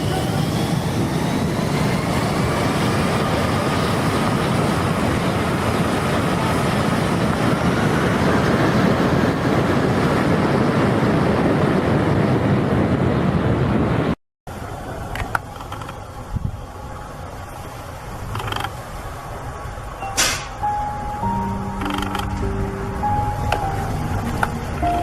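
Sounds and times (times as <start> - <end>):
loud engine roar: 0.0 - 14.1.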